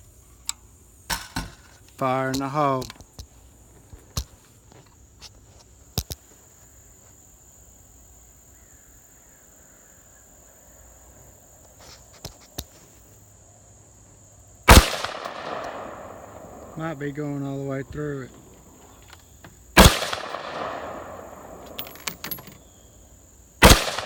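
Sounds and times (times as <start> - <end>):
high insect buzz: 0.0 - 24.0
rifle shot with echo: 14.7 - 17.0, 19.8 - 22.3, 23.6 - 24.0.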